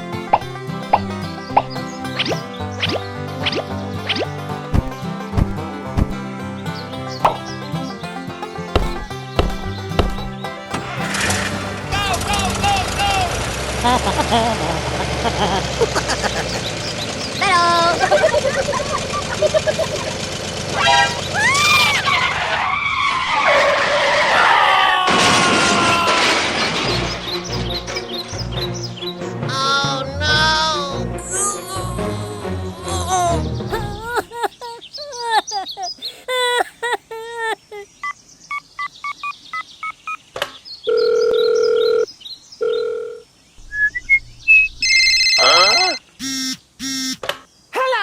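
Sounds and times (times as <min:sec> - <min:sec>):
light music: 0:00.0 - 0:13.3, 0:26.8 - 0:34.2
long descending screech: 0:20.8 - 0:26.5
rising and falling squeal: 0:20.8 - 0:27.7, 0:43.6 - 0:47.2
faint bird chirps: 0:37.8 - 0:47.7
rising beeps: 0:38.0 - 0:40.2, 0:43.6 - 0:47.2
telephone keypad beeps: 0:38.0 - 0:40.2, 0:40.9 - 0:43.2, 0:44.8 - 0:47.2
telephone ringing tones: 0:40.9 - 0:43.2, 0:44.8 - 0:47.2.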